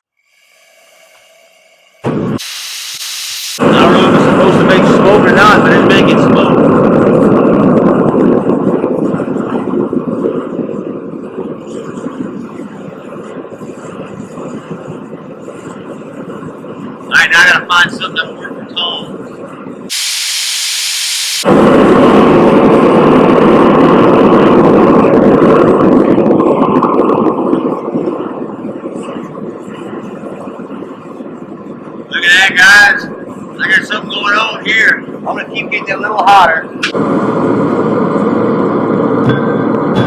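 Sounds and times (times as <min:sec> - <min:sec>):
propane forge burner rushing: 0:00.2 - 0:40.0
metallic strike ringing: 0:39.2 - 0:40.0.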